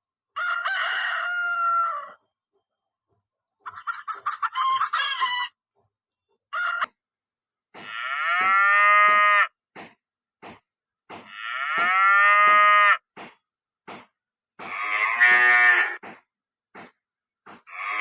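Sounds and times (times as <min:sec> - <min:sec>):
cow mooing: 0:07.8 - 0:09.5, 0:11.3 - 0:13.0, 0:14.7 - 0:16.0.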